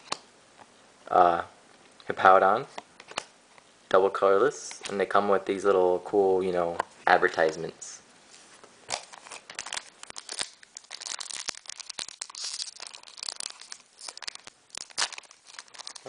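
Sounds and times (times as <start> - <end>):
foil wrapper crinkling: 8.9 - 16.0.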